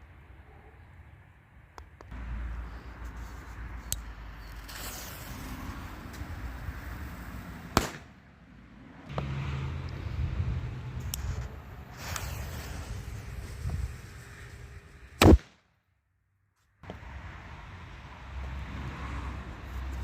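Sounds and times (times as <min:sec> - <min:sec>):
firecracker bang: 0:07.7 - 0:08.1, 0:15.1 - 0:15.6.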